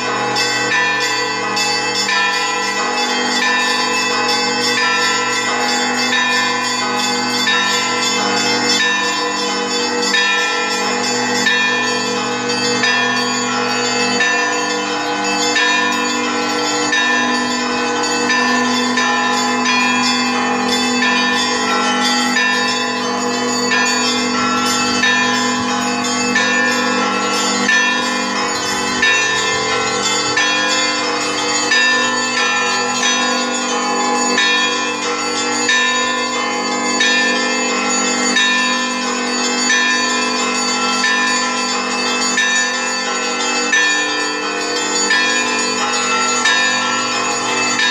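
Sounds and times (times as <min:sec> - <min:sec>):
church bells pealing: 0:00.0 - 0:47.9
deep bell humming: 0:10.1 - 0:40.0.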